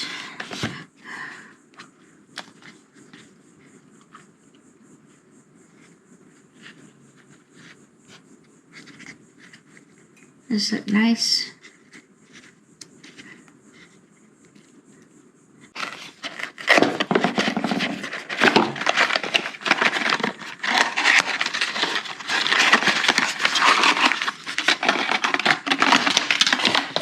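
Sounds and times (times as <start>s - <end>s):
packaging crinkling: 15.8s - 27.0s.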